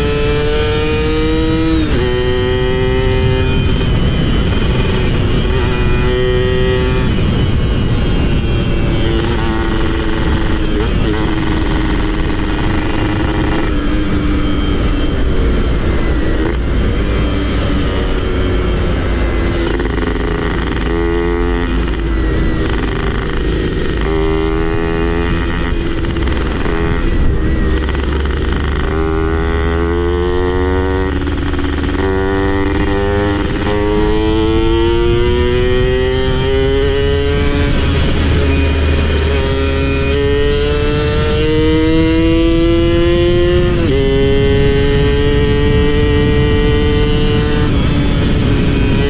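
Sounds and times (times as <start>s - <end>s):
motorcycle engine accelerating: 0.0s - 49.0s.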